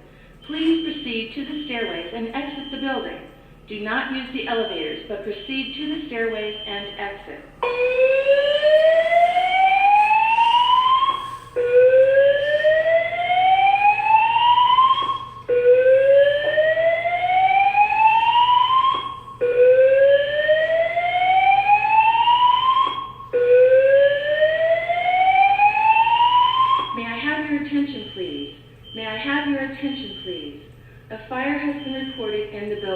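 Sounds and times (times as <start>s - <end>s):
fire alarm whoop tone: 6.4s - 27.1s, 28.0s - 29.1s, 31.7s - 32.9s.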